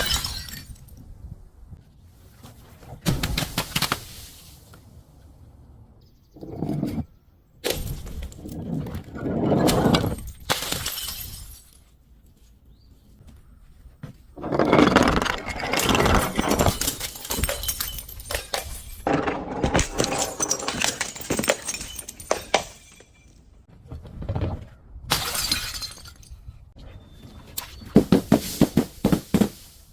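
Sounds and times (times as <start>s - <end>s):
glass bottles shattering and crunching: 0.0s - 1.0s, 9.6s - 11.8s, 14.5s - 23.6s, 25.1s - 26.4s.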